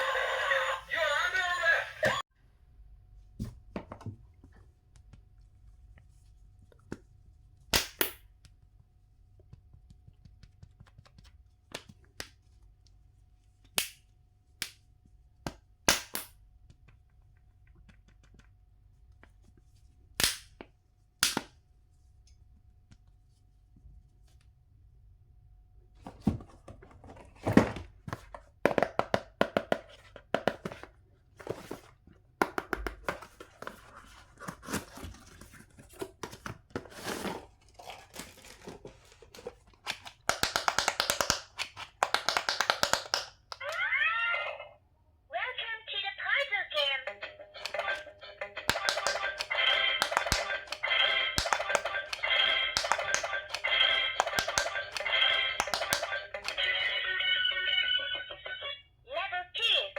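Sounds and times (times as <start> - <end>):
packaging rustling and crinkling: 33.4 - 40.2.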